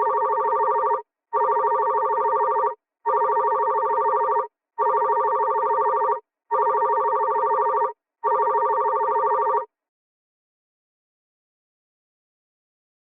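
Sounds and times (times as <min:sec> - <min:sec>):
telephone ringing with warbling trill: 0:00.0 - 0:09.7.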